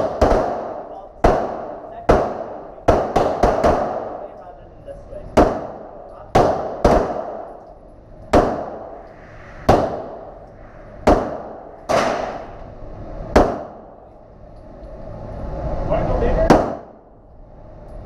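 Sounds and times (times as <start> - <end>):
pistol shots echoing: 0.0 - 4.4, 5.4 - 7.6, 8.3 - 9.0, 9.7 - 10.4, 11.0 - 12.6, 13.4 - 14.0.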